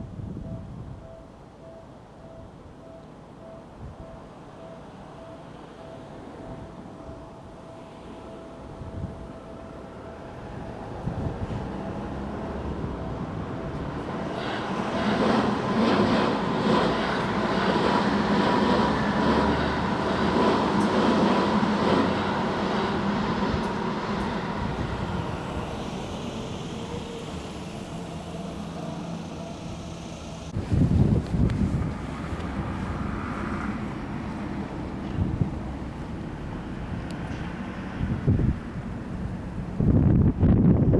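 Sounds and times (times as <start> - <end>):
train passing: 0.1 - 40.9.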